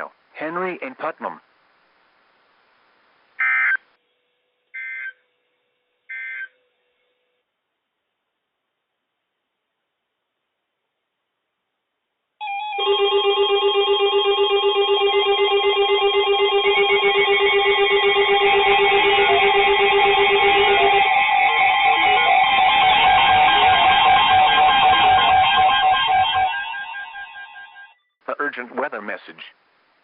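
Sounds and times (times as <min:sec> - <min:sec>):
steady and warbling alarm tones: 0:12.4 - 0:28.1
rapid pulsing low beep: 0:14.5 - 0:28.0.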